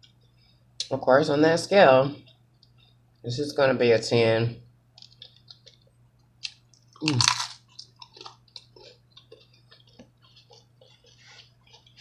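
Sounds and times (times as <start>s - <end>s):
person chewing food: 2.2s - 3.2s, 4.9s - 12.0s.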